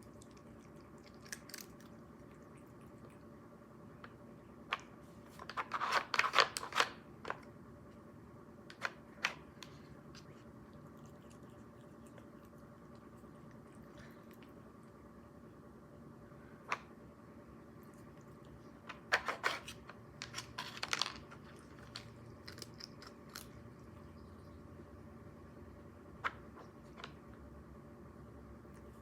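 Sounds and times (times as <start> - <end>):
cat chewing with crunching bites: 0.0 - 24.2.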